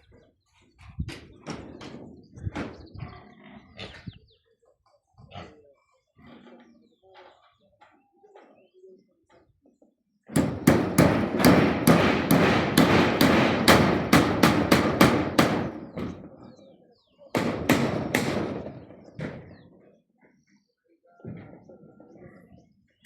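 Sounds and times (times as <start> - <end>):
rapid hammering: 10.3 - 16.2, 17.4 - 19.4.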